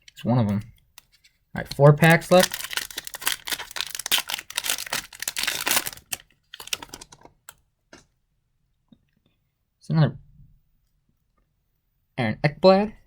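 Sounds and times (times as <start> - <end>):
card pack wrapper tearing and crinkling: 1.6 - 7.3.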